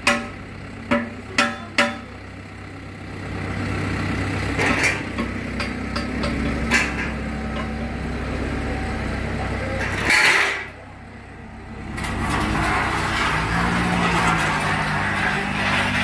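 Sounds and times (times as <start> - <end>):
engine running: 0.0 - 16.0.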